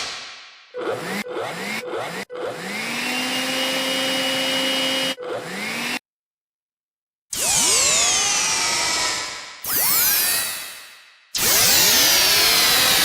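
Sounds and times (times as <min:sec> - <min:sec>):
vacuum cleaner motor whine: 0:00.8 - 0:06.0.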